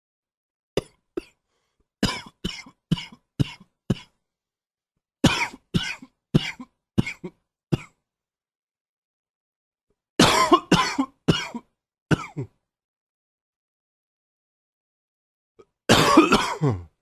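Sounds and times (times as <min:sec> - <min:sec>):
man coughing: 0:02.0 - 0:04.2, 0:05.3 - 0:08.0, 0:10.2 - 0:12.6, 0:15.9 - 0:17.0.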